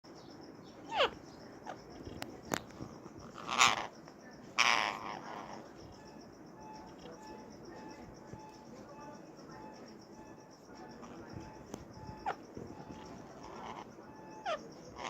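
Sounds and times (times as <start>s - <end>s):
parakeet harsh screeches: 0.9s - 1.8s, 3.3s - 3.9s, 4.6s - 5.7s, 12.0s - 15.0s.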